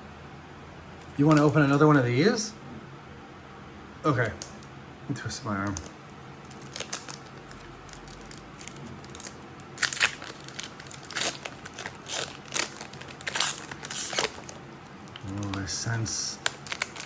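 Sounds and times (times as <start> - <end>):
foil wrapper crinkling and tearing: 1.0 - 2.0, 5.6 - 17.0.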